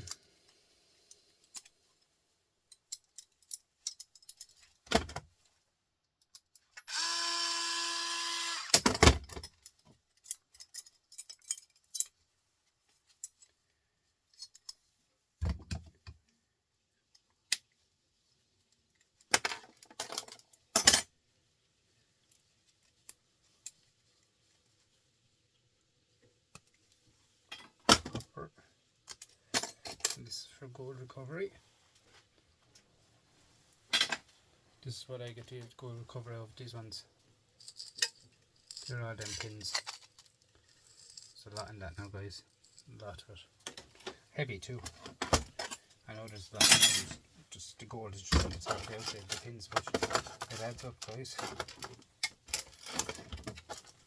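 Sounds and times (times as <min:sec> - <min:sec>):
cordless drill whirring: 0:06.9 - 0:08.8
small parts clattering: 0:08.4 - 0:12.3, 0:19.0 - 0:21.1, 0:37.6 - 0:47.3, 0:48.2 - 0:54.0.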